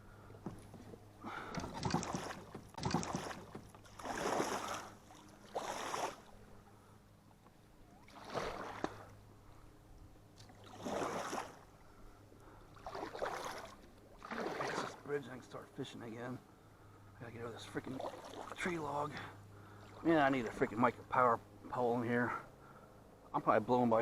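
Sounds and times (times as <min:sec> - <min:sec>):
water splashing around kayak: 0:00.4 - 0:06.6, 0:07.9 - 0:09.2, 0:10.4 - 0:15.1, 0:17.6 - 0:20.8.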